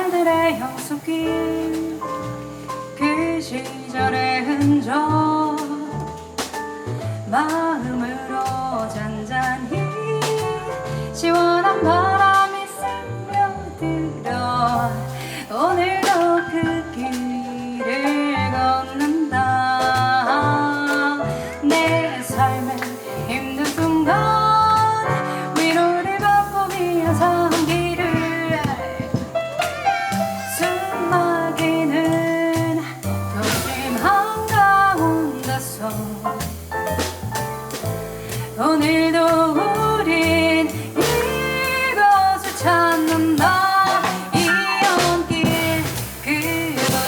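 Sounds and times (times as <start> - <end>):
person singing sliding melody: 0.0 - 2.4, 13.5 - 47.0
drum kit with cymbals: 0.0 - 47.0
piano: 0.0 - 47.0
upright double bass: 0.0 - 47.0.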